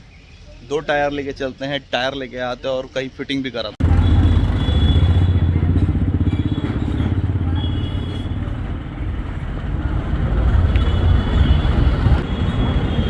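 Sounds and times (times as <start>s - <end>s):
road noise: 0.0s - 13.0s
motorcycle engine running: 3.8s - 8.7s.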